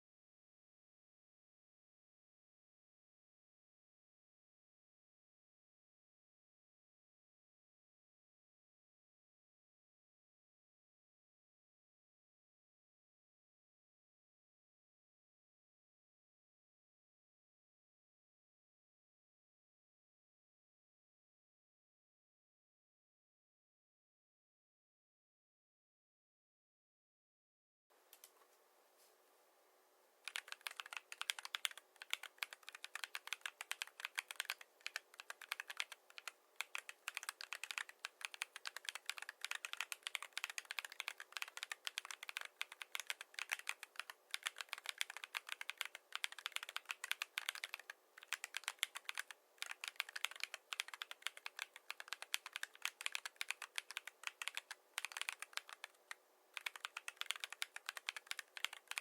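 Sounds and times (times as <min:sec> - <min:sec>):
fast typing on mechanical keyboard: 0:30.3 - 0:59.0.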